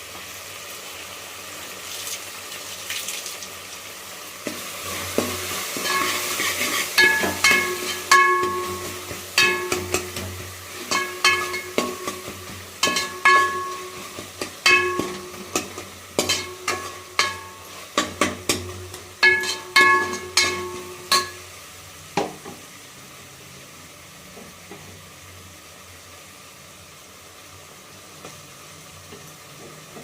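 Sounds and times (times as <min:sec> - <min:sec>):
food sizzling: 0:00.0 - 0:30.0
metal spoon scraping metal pan: 0:05.1 - 0:18.6, 0:19.2 - 0:21.4.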